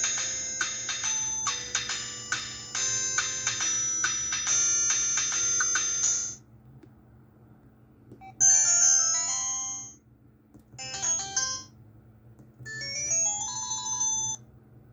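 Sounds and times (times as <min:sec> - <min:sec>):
phone electronic alert melodies: 0:10.8 - 0:11.7, 0:12.8 - 0:14.4.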